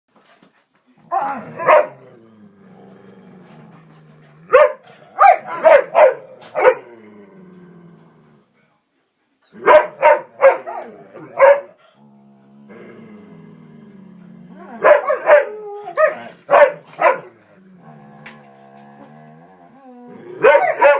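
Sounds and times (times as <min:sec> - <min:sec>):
dogs growling: 0:01.0 - 0:08.5, 0:09.5 - 0:20.9
dogs barking: 0:01.6 - 0:02.0, 0:04.5 - 0:06.9, 0:09.6 - 0:11.8, 0:14.8 - 0:17.3, 0:20.4 - 0:20.9.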